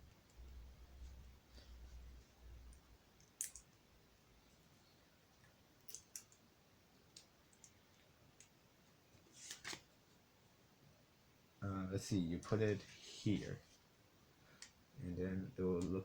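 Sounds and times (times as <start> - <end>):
plastic toy bricks clicking: 3.4 - 3.7.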